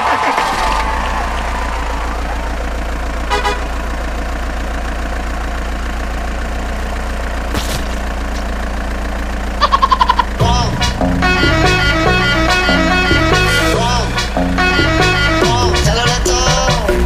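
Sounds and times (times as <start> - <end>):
truck engine idling: 0.0 - 17.0
truck horn toots: 3.0 - 4.3, 9.6 - 17.0.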